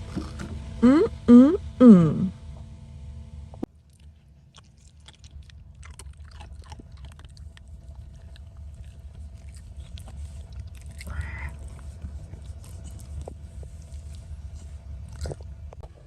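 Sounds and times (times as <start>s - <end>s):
low steady hum: 0.0s - 16.0s
dog chewing on a hard chew: 3.8s - 16.0s.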